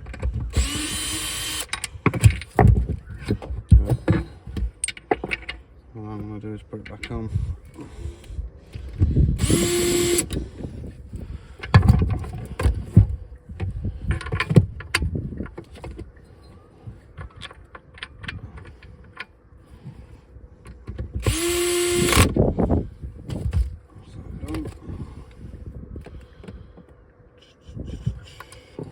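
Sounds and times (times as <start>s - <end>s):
power drill whine: 0.5s - 1.7s, 9.4s - 10.4s, 21.2s - 22.3s.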